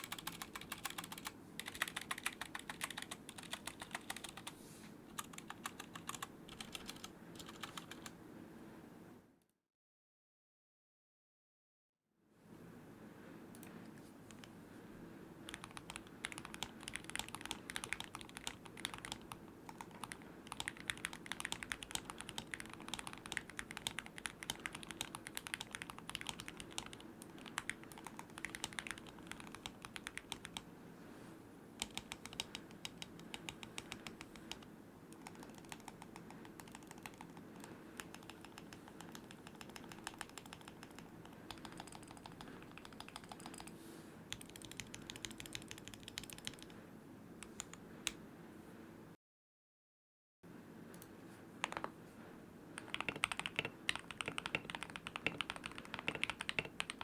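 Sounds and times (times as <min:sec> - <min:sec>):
mechanical keyboard typing: 0:00.0 - 0:04.5, 0:05.2 - 0:08.1, 0:15.5 - 0:30.7, 0:31.8 - 0:46.8, 0:51.6 - 0:51.9, 0:52.8 - 0:57.0
faint steady hum: 0:00.0 - 0:09.5, 0:12.2 - 0:49.2, 0:50.5 - 0:57.0.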